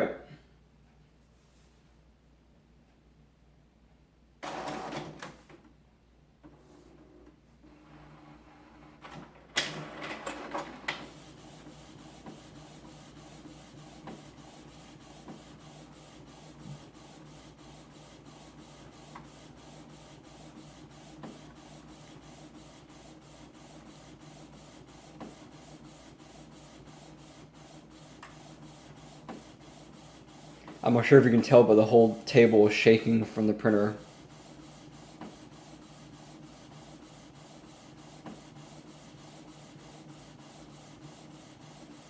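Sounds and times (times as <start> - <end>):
printer mechanism humming and clicking: 4.4 - 5.7, 6.4 - 31.5, 34.0 - 42.0
printer clattering: 9.0 - 14.5.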